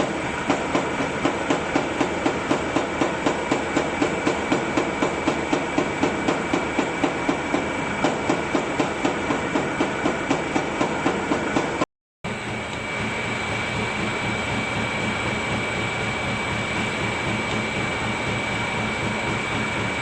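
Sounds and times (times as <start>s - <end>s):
machinery running: 0.0s - 20.0s
regular mechanical knocking: 0.4s - 11.8s.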